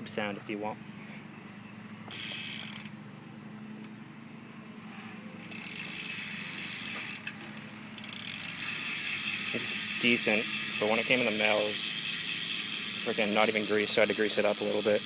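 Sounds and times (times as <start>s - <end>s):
bike hub ratcheting: 2.1s - 3.0s, 5.4s - 15.0s.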